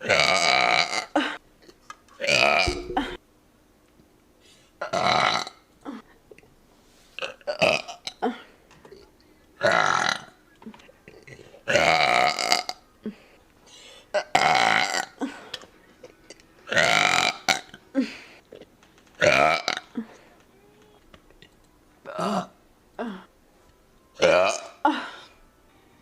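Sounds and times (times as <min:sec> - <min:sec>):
woman burping loudly: 0:02.4 - 0:03.2, 0:09.6 - 0:10.4, 0:11.1 - 0:12.8, 0:14.2 - 0:15.3, 0:16.7 - 0:18.1, 0:24.2 - 0:25.0.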